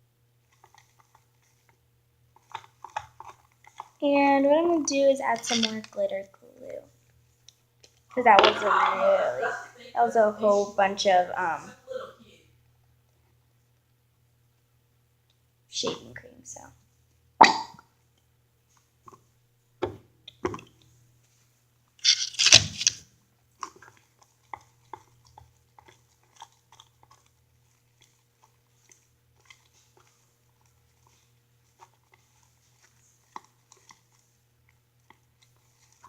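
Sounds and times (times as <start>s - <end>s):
wet squishing in a mixing bowl: 0.3s - 8.7s, 16.7s - 36.0s.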